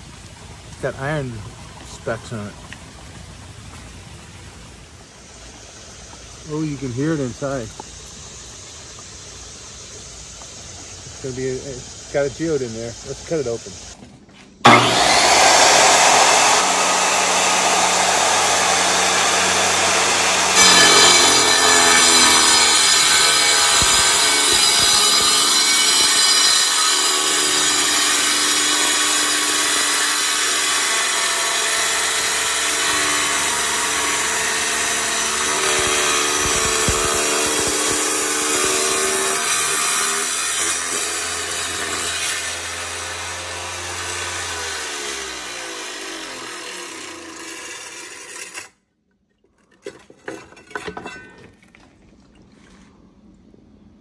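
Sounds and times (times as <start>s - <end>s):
power saw grinding whine: 14.6s - 48.8s.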